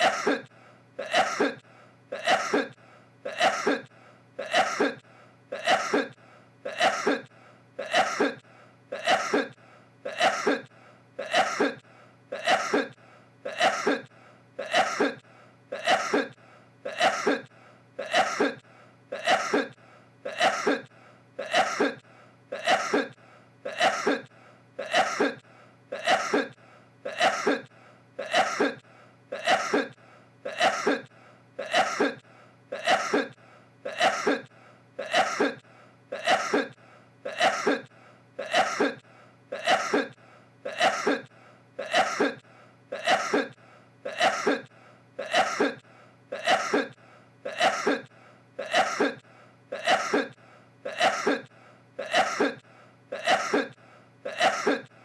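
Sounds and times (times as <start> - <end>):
man sneezing: 0.0 - 55.0.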